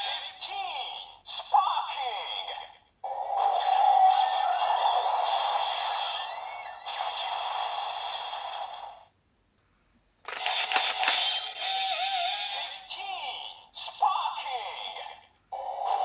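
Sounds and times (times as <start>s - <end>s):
toy electronic sound effects: 3.6s - 8.4s, 10.3s - 13.1s.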